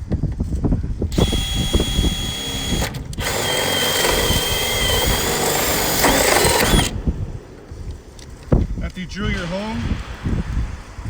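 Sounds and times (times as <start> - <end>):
power drill whining through metal: 1.1 - 8.5.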